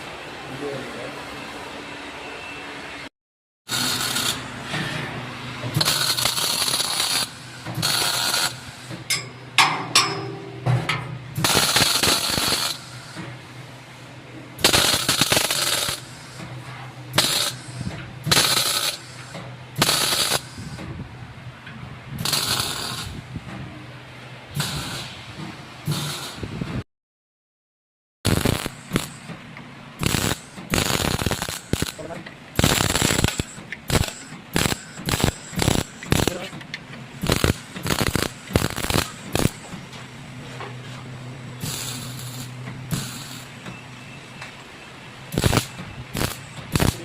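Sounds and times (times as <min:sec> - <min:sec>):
welding arc crackle: 0:03.7 - 0:04.6, 0:05.8 - 0:08.9, 0:11.4 - 0:13.2, 0:14.6 - 0:16.4, 0:17.2 - 0:20.6, 0:22.2 - 0:23.2, 0:24.6 - 0:25.2, 0:25.8 - 0:26.4, 0:28.3 - 0:29.3, 0:30.0 - 0:36.5, 0:37.2 - 0:39.7, 0:41.6 - 0:43.6, 0:45.3 - 0:47.0
welding machine hum: 0:03.7 - 0:09.3, 0:11.3 - 0:20.8, 0:22.1 - 0:23.4, 0:24.1 - 0:26.7, 0:28.3 - 0:44.3, 0:45.0 - 0:47.0.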